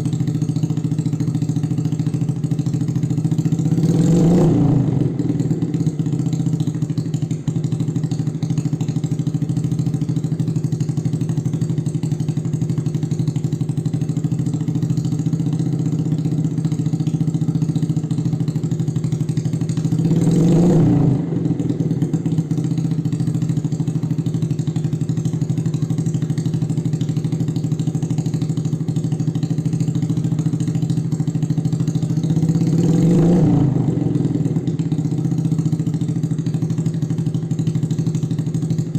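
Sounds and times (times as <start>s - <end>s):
motorcycle engine idling: 0.0s - 38.9s
engine revving: 3.8s - 5.7s, 20.0s - 22.1s, 32.4s - 35.0s.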